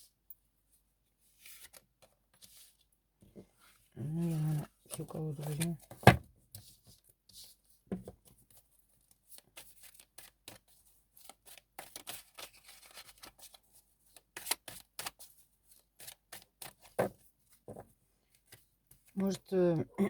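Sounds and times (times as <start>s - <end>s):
cards being shuffled: 4.2s - 6.0s.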